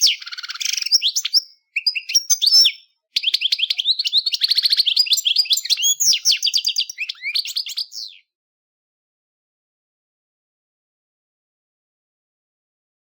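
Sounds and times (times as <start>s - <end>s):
goldfinch singing: 0.0s - 8.3s.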